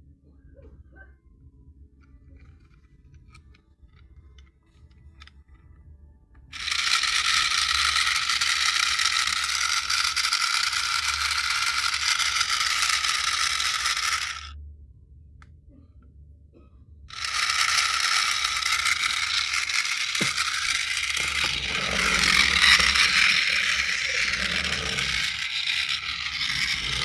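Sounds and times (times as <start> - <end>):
toy tank motor gear rattle: 2.0 - 5.6, 6.5 - 14.6, 17.1 - 27.0.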